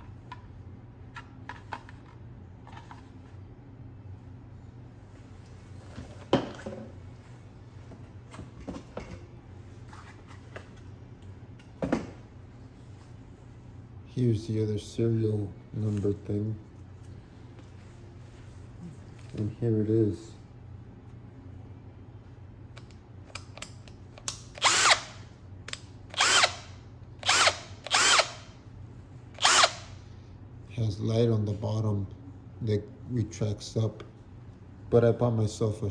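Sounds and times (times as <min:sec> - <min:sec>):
steady low hum: 0:00.0 - 0:35.9
cordless drill motor whine: 0:24.6 - 0:25.2, 0:26.1 - 0:28.5, 0:29.4 - 0:30.0.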